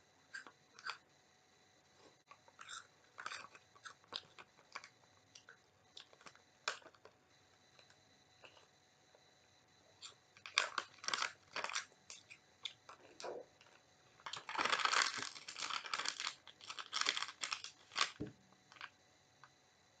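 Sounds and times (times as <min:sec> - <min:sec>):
snack crunching: 0:02.3 - 0:07.1, 0:07.8 - 0:08.7, 0:10.0 - 0:18.9
plastic snack packet crinkling: 0:02.6 - 0:07.1, 0:10.0 - 0:18.9.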